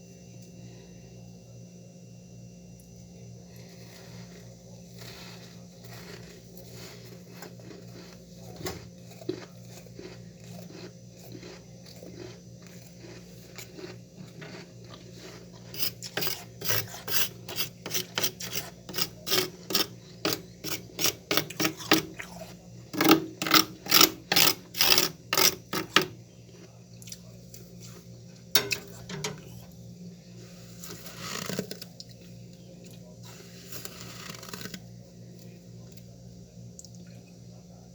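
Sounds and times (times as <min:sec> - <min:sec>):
steady low hum: 0:00.0 - 0:37.9
freezer frost being scraped: 0:03.5 - 0:26.2, 0:30.4 - 0:31.9, 0:33.2 - 0:34.8.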